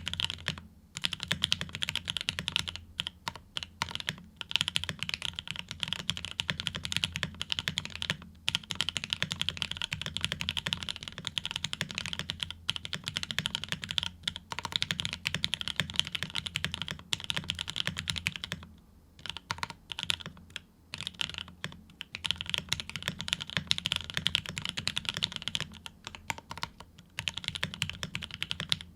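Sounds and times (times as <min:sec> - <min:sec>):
mechanical keyboard typing: 0:00.0 - 0:28.9.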